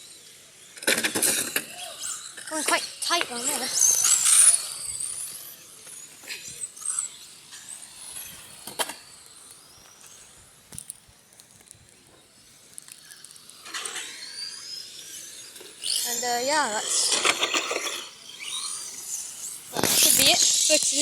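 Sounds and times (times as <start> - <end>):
remote-control car motors whining: 0.0 - 21.0.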